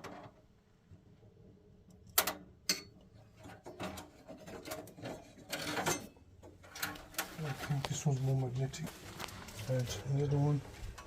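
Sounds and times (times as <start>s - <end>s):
soft scraping and rubbing: 6.6s - 11.0s.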